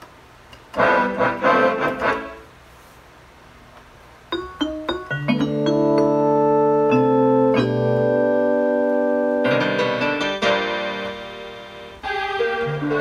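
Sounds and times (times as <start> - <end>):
electronic keyboard chords: 0.7 - 2.4, 4.3 - 13.0.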